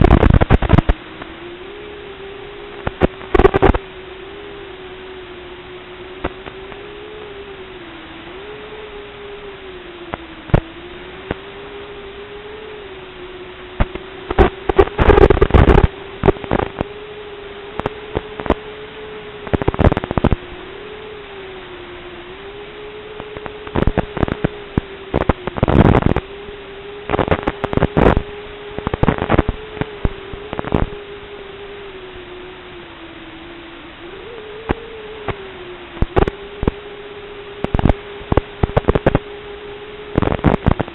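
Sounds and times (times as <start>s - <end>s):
loud crackles and clicks: 0.0s - 3.9s, 6.1s - 7.5s, 10.0s - 12.8s, 13.7s - 21.0s, 22.7s - 31.8s, 34.2s - 40.9s
hiss and wavering hum: 0.0s - 40.9s.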